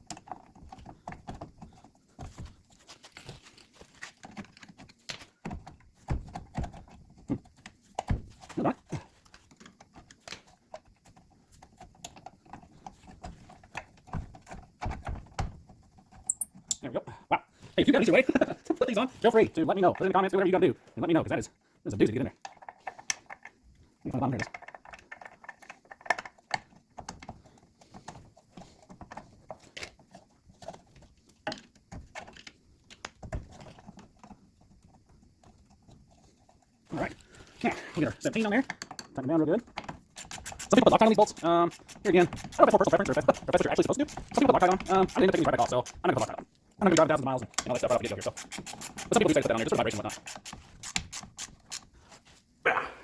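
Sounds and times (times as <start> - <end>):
metal tools clicking and knocking: 22.4 - 30.8, 38.2 - 51.9.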